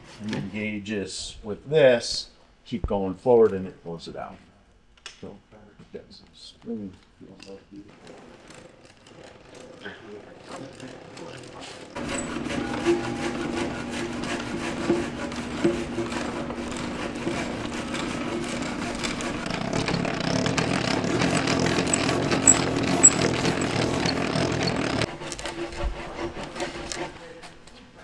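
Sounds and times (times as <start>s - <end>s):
drill gearing clicks: 7.9s - 25.1s
hand-cranked drill boring wood: 7.9s - 28.0s.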